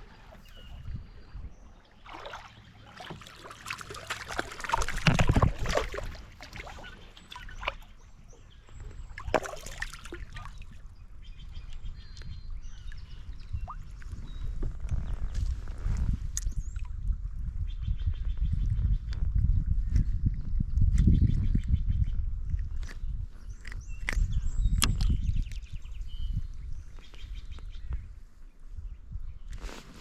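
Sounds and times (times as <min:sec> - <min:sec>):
water splashing against kayak: 0:02.0 - 0:10.8.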